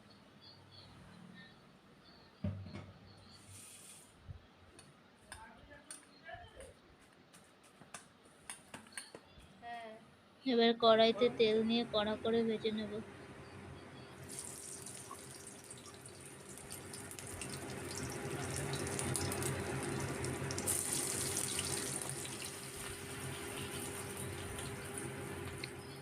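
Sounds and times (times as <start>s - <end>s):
food deep-frying in hot oil: 14.2s - 26.0s.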